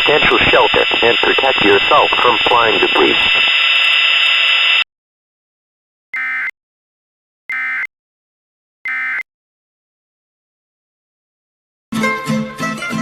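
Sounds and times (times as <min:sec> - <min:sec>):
buzzing digital data bursts: 0:00.0 - 0:04.8.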